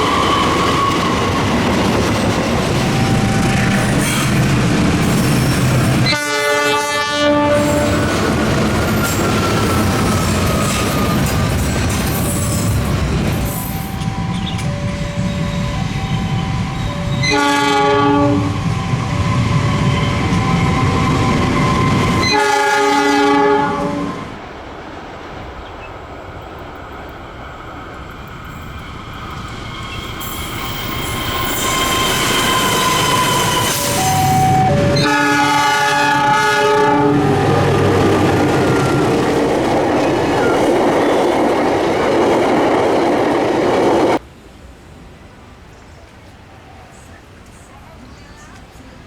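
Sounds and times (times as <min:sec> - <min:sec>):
locomotive rumble: 0:00.0 - 0:24.6, 0:25.4 - 0:44.2
clatter of passing train cars: 0:00.0 - 0:49.0
train horn blasts: 0:06.0 - 0:08.2, 0:13.9 - 0:18.8, 0:19.8 - 0:24.4, 0:31.3 - 0:38.3.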